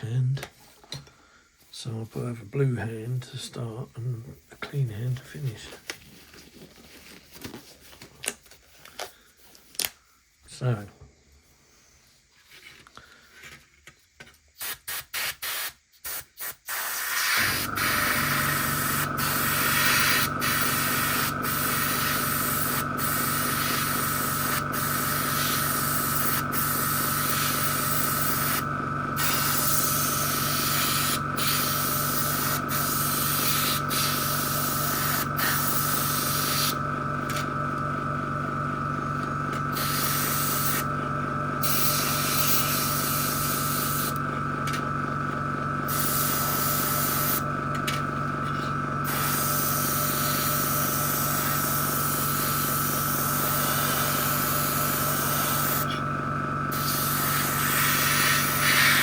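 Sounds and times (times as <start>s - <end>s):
airbrush spraying hiss: 14.6s - 36.8s, 39.7s - 40.9s, 41.6s - 44.2s, 45.9s - 47.4s, 49.0s - 56.0s, 56.7s - 59.0s
compressor humming: 16.4s - 59.0s.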